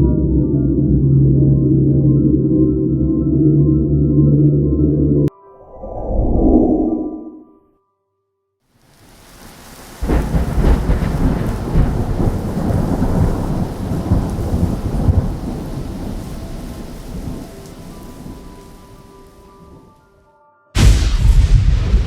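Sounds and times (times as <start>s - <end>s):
thunder rumbling: 9.4s - 18.9s, 20.8s - 22.0s.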